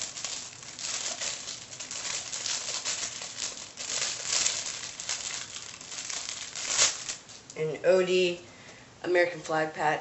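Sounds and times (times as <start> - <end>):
packaging crinkling: 0.0 - 7.6.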